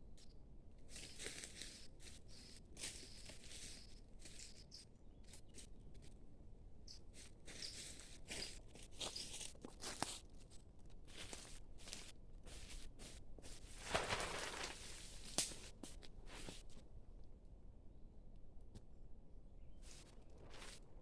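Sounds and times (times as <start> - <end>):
rustling and crunching on forest floor: 0.9 - 6.2, 7.1 - 16.8, 19.8 - 21.0.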